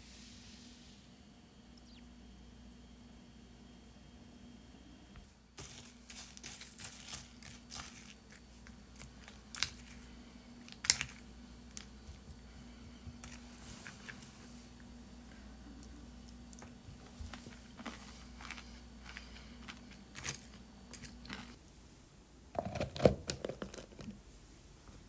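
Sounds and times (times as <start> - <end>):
faint steady hum: 0.0 - 25.0
crinkling rustling handling noise: 16.5 - 21.6.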